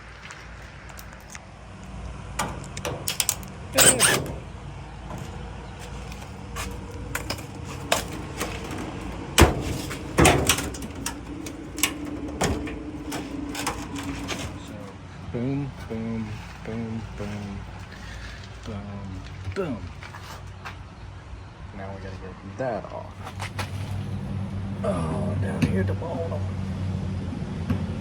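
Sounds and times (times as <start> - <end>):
tools being handled: 2.4 - 4.5, 5.1 - 15.0
metal panels knocking and clanking: 2.4 - 15.0.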